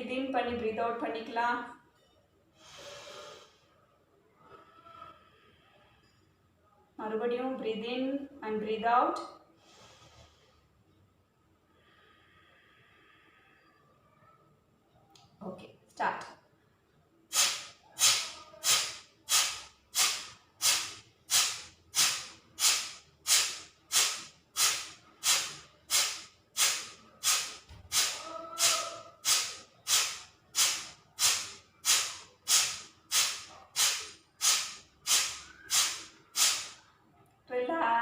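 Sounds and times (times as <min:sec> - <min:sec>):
sharp nasal exhalations: 0:02.6 - 0:03.8, 0:09.6 - 0:10.6, 0:17.3 - 0:36.9.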